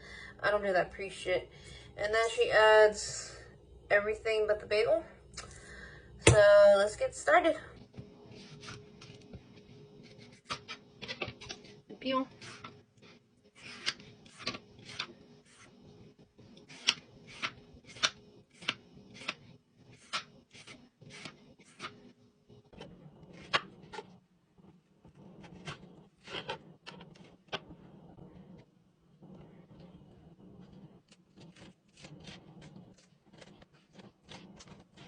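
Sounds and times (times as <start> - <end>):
peeler scraping cucumber skin: 13.6 - 15.8, 16.6 - 22.0, 30.6 - 35.0.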